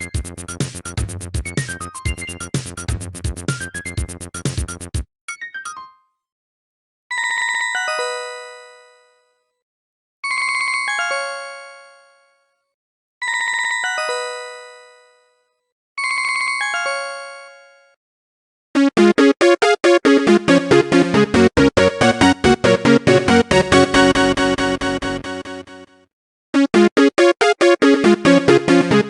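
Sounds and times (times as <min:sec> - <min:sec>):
chime-like ringtone falling notes: 0:07.1 - 0:09.3, 0:10.2 - 0:12.4, 0:13.2 - 0:15.4, 0:16.0 - 0:18.0
fast busy ringtone melody: 0:18.8 - 0:25.2.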